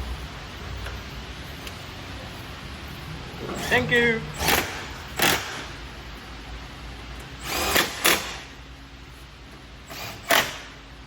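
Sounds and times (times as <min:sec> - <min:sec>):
power tool driving bolts: 0:04.4 - 0:05.7, 0:07.4 - 0:08.5, 0:09.9 - 0:10.8.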